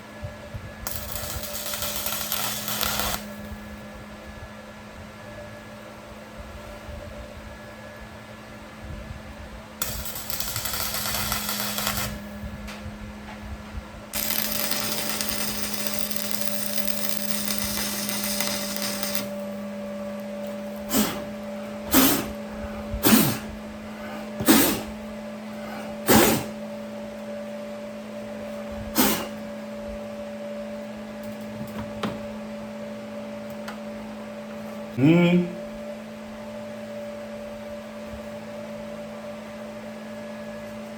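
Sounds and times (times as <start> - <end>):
steady hum: 0.0 - 38.9
welding arc crackling and hissing: 0.8 - 3.5, 9.8 - 12.4, 14.1 - 19.4, 21.9 - 22.4, 24.4 - 25.0, 26.1 - 26.6, 29.0 - 29.4.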